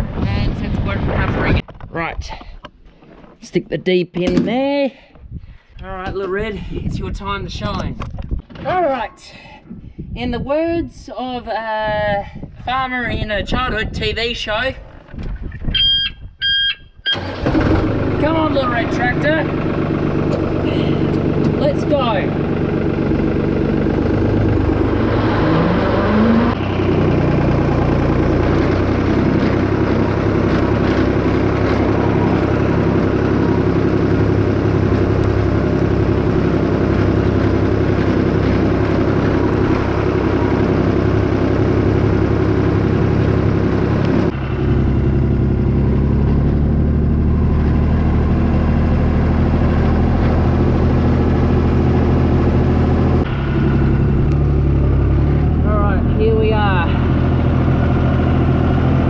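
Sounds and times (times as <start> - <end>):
tractor engine revving: 17.0 - 59.0.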